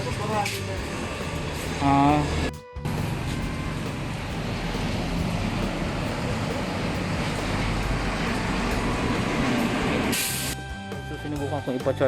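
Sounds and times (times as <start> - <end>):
traffic and street noise: 0.0 - 10.6.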